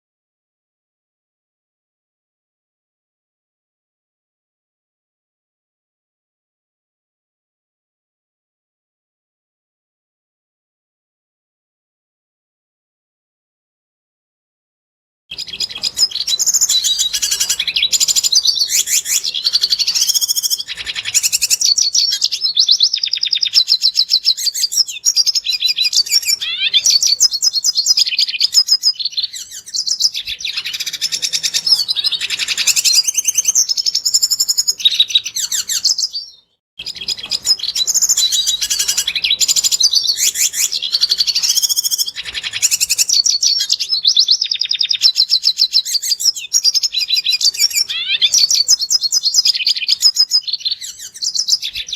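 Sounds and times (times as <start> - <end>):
bird twittering song: 15.3 - 51.9.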